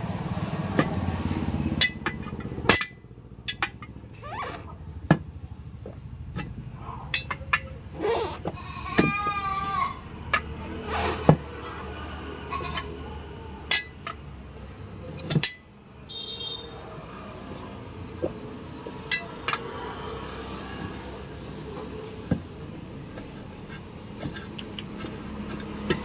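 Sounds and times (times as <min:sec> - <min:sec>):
metal clinks and knocks: 0:01.6 - 0:09.2, 0:13.6 - 0:14.3, 0:15.0 - 0:15.8, 0:19.0 - 0:20.0
bleating animal call: 0:08.1 - 0:10.1.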